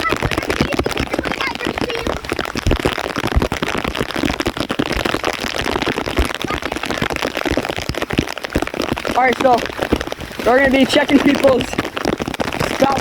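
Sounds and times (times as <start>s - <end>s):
gusts thumping microphone: 0.0s - 13.0s
heavy rain pouring: 0.0s - 13.0s.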